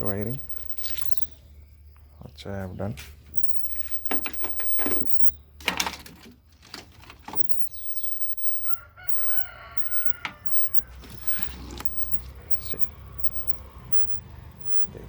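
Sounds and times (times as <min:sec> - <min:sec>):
drawn-out animal call: 0:00.0 - 0:01.3, 0:07.4 - 0:15.0
knocks and handling sounds: 0:03.0 - 0:07.6.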